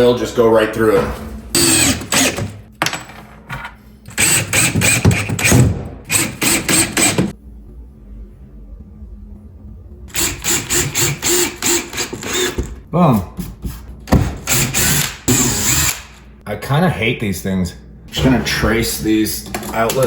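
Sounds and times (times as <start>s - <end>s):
power screwdriver driving screws: 4.1s - 7.3s, 10.2s - 12.6s, 14.5s - 16.1s.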